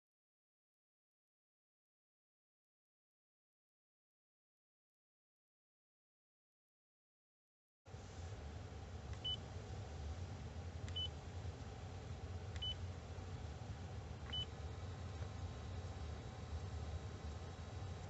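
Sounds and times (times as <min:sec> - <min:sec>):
low hum: 0:07.9 - 0:18.0.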